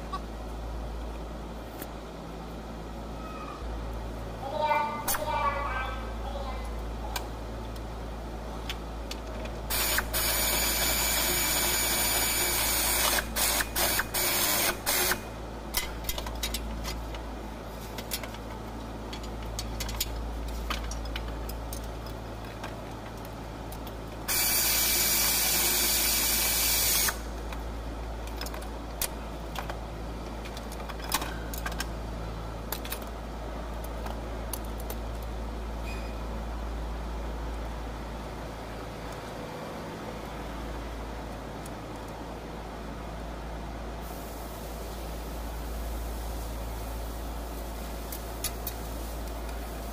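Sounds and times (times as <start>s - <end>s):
power tool running: 9.7s - 15.2s.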